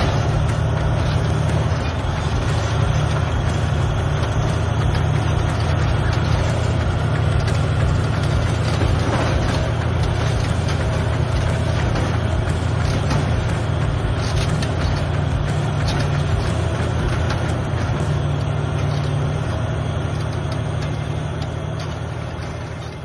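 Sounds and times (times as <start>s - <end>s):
bulldozer diesel engine droning: 0.0s - 23.0s
machine clatter: 0.0s - 23.0s.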